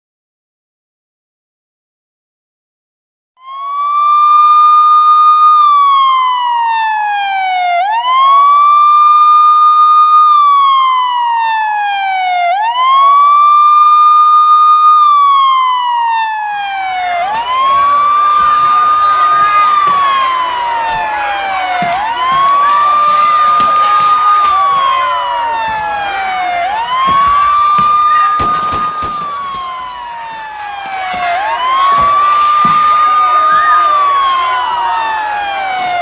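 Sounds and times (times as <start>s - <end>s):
siren wailing: 3.4s - 36.0s
crowd-like din: 10.4s - 36.0s.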